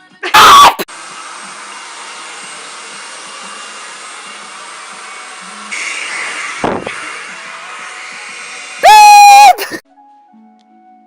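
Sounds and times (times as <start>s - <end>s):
hair dryer blowing: 0.8s - 9.8s
loud burst of noise: 5.7s - 9.6s.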